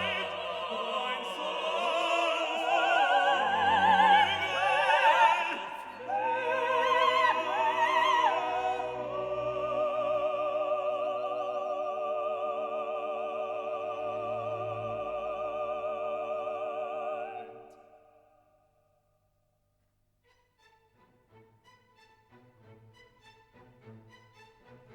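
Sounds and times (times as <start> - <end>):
operatic voice singing: 0.0 - 17.9.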